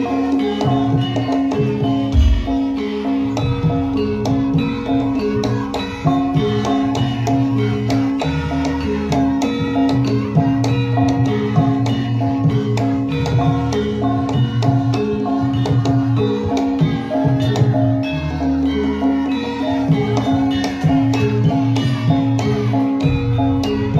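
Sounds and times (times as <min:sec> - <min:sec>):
struck pitched percussion: 0:00.0 - 0:23.9
hand drum playing quick pattern: 0:02.0 - 0:03.8.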